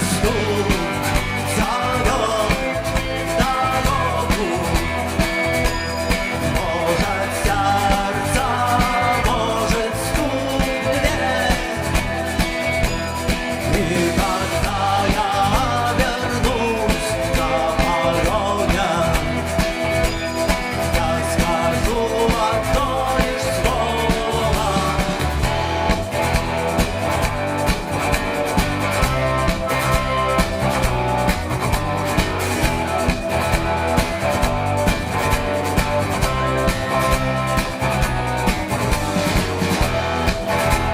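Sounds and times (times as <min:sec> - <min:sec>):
live rock band playing: 0:00.0 - 0:40.9.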